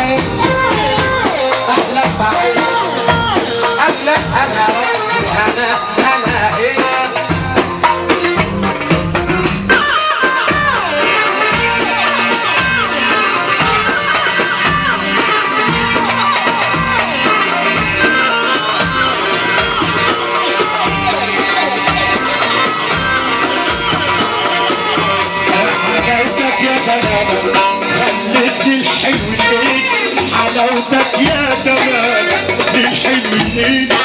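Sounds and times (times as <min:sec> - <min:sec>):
sliding melodic lead: 0:00.0 - 0:34.0
steady drum beat: 0:00.0 - 0:34.0
tambourine jingle: 0:10.7 - 0:34.0.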